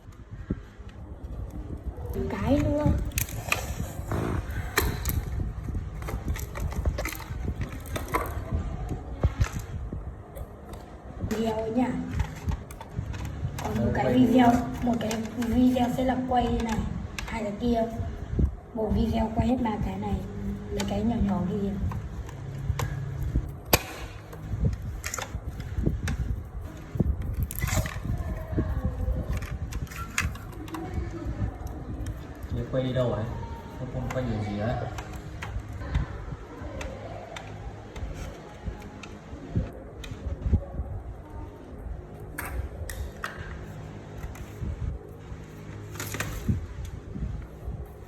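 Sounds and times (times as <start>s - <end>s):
plastic parts clicking and knocking: 2.4s - 8.5s.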